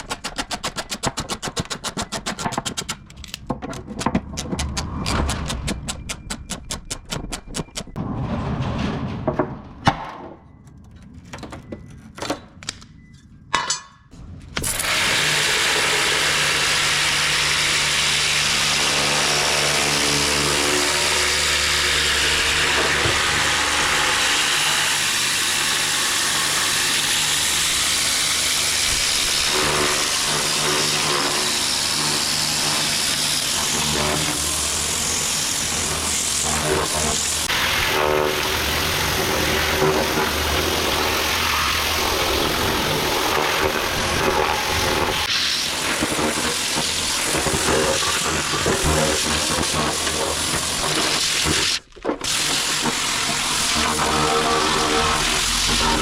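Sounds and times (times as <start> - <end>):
jet washer spraying: 14.6 - 20.4, 24.2 - 56.0.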